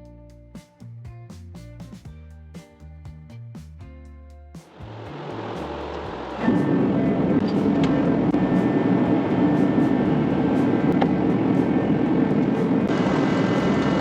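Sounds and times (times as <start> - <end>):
steady mechanical running noise: 4.8 - 14.0.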